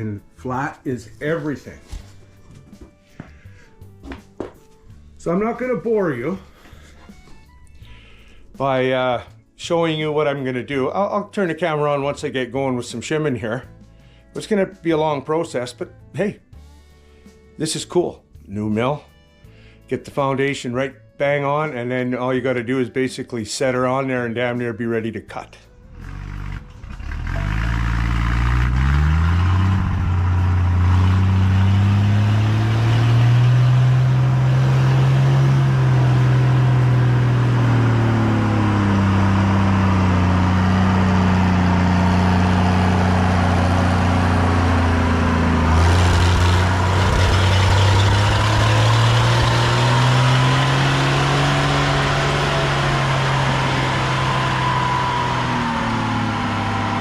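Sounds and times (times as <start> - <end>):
engine running: 25.9 - 57.0.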